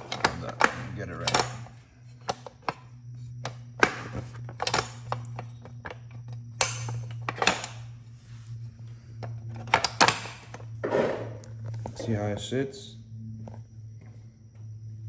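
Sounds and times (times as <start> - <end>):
metal parts clicking and clinking: 0.0 - 2.8, 6.6 - 7.8
steady low hum: 0.0 - 15.0.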